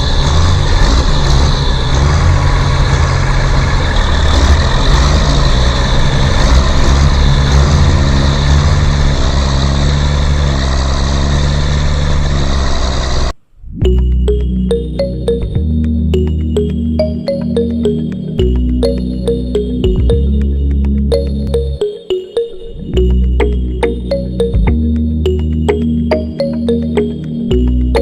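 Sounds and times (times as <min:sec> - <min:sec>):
heavy vehicle engine running: 0:00.0 - 0:21.8, 0:22.8 - 0:28.0.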